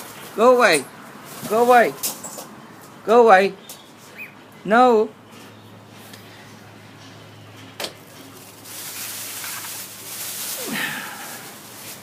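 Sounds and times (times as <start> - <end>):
plastic bag rustling: 8.1 - 12.0.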